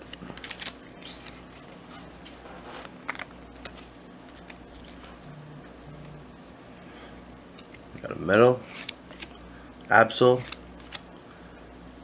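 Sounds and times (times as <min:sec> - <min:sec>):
trading cards sliding and rustling: 0:00.0 - 0:05.3, 0:08.5 - 0:09.4, 0:10.1 - 0:11.0
low steady hum: 0:00.0 - 0:12.0.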